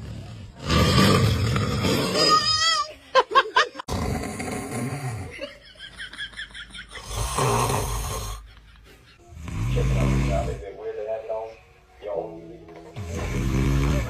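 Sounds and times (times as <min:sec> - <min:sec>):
man snoring: 0:00.0 - 0:02.4, 0:03.8 - 0:05.4, 0:07.0 - 0:08.5, 0:09.3 - 0:10.6, 0:13.0 - 0:14.0.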